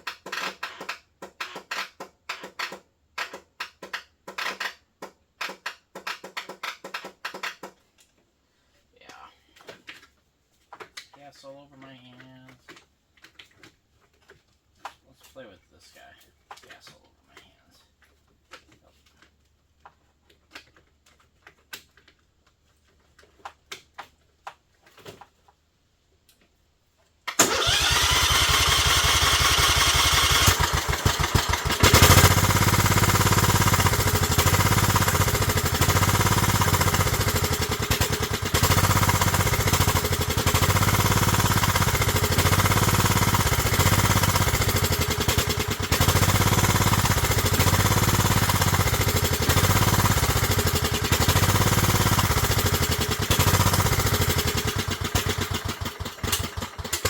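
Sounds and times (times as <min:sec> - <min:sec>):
lawn mower engine starting and running: 0:00.0 - 0:07.7, 0:27.2 - 0:57.0
faint handling clicks and taps: 0:09.0 - 0:25.6.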